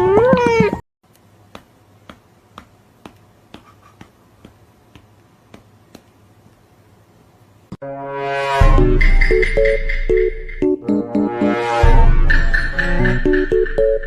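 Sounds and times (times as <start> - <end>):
music: 7.8 - 14.0.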